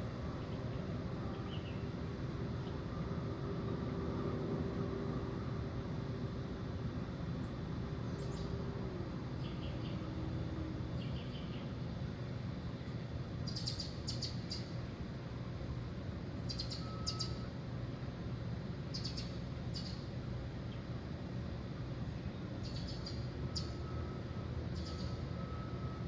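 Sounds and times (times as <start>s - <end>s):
small bird chirping: 13.5s - 14.7s, 16.5s - 17.5s, 18.9s - 20.0s, 22.6s - 23.8s, 24.8s - 25.2s.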